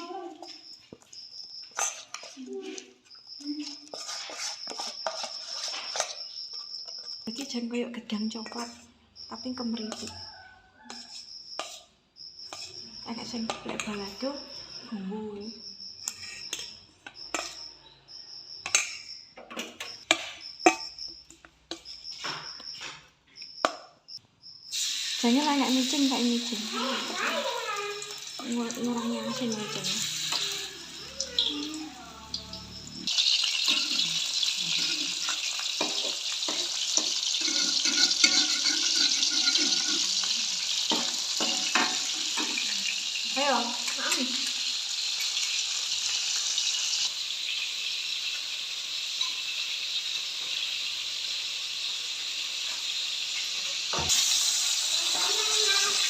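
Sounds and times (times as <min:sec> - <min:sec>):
kitchen utensils and dishes clinking: 0:00.0 - 0:08.9, 0:09.5 - 0:11.9, 0:12.5 - 0:14.7, 0:16.0 - 0:17.8, 0:18.6 - 0:23.8, 0:25.2 - 0:47.1, 0:52.6 - 0:56.0
water running from a tap: 0:24.7 - 0:56.0.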